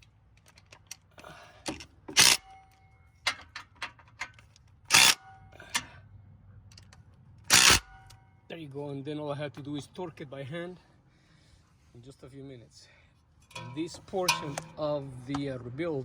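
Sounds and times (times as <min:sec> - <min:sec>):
clicks of tools and parts handled: 0:00.0 - 0:05.9, 0:06.7 - 0:08.2, 0:13.4 - 0:14.8
power tool driving bolts: 0:01.6 - 0:04.2, 0:04.9 - 0:05.9, 0:07.5 - 0:08.2.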